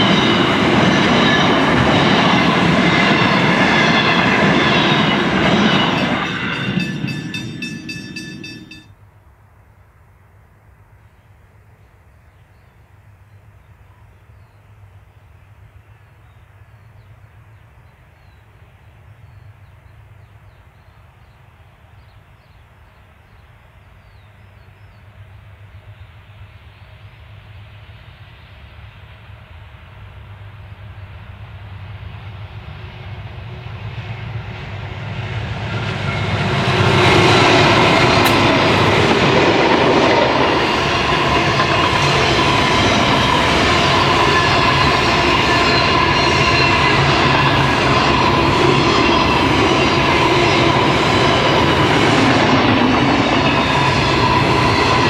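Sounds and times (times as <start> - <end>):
locomotives passing: 0.0 - 8.9, 32.0 - 55.0.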